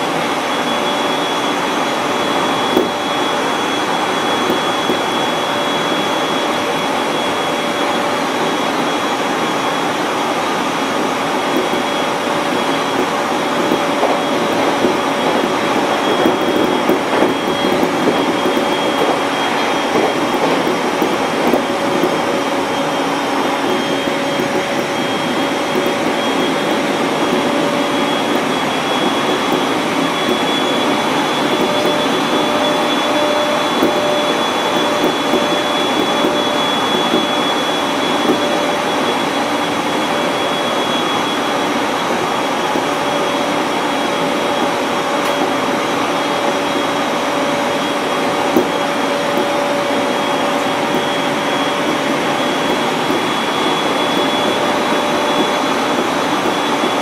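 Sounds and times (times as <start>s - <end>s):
high whine: 0.0s - 57.0s
train wheels rumbling on rails: 0.0s - 57.0s.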